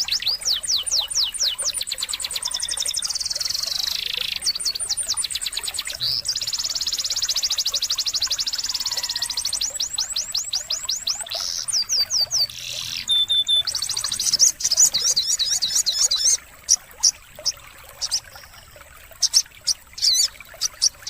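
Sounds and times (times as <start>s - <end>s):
bird whistling and chattering: 8.7s - 16.4s, 20.0s - 20.8s.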